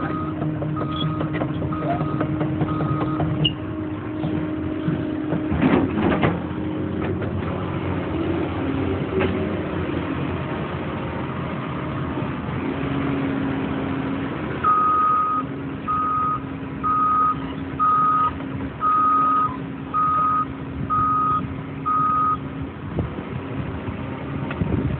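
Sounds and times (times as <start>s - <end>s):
travel alarm beeping: 0.0s - 3.3s, 14.6s - 22.4s
excavator diesel engine running: 0.0s - 24.9s.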